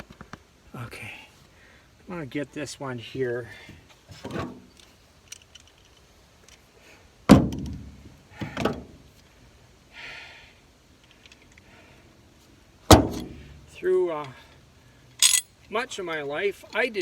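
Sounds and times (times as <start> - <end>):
tools knocking on truck bed: 7.3 - 8.8, 12.9 - 13.4.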